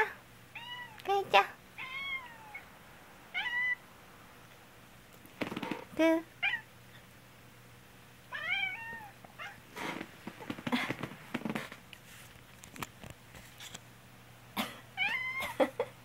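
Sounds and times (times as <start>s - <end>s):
cat meowing: 0.5s - 1.0s, 1.8s - 2.7s, 3.3s - 3.8s, 8.3s - 9.6s, 15.0s - 15.6s
person coughing: 14.6s - 14.9s.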